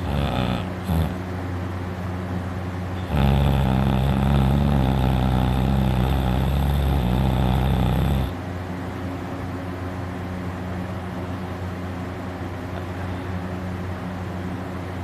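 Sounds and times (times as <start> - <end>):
person snoring: 0.0 - 1.2, 3.0 - 8.4.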